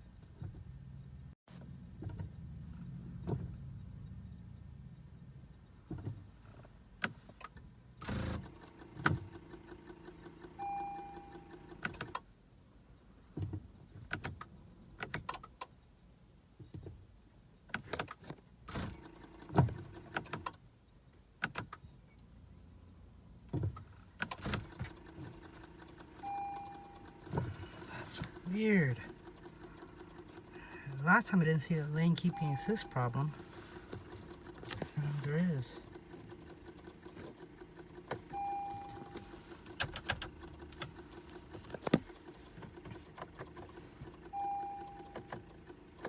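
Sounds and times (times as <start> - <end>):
dashboard warning chimes: 10.5 - 11.8, 24.5 - 36.3, 37.4 - 42.4, 43.7 - 45.9
short electronic beeps: 10.6 - 11.6, 26.2 - 29.1, 31.7 - 33.5, 38.3 - 39.4, 44.3 - 45.3
push-button clicks: 24.2 - 46.0.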